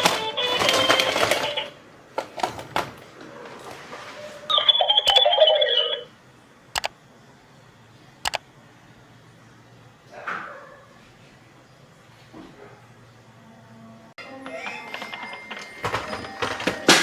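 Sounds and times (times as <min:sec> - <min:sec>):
music: 0:00.0 - 0:01.7, 0:14.2 - 0:17.0
sharp clicks: 0:06.7 - 0:07.0, 0:08.2 - 0:08.4.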